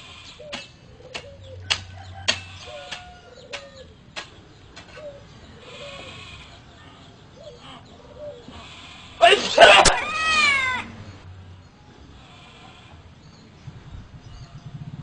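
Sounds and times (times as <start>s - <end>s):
low pitch-bending animal call: 9.8s - 11.0s.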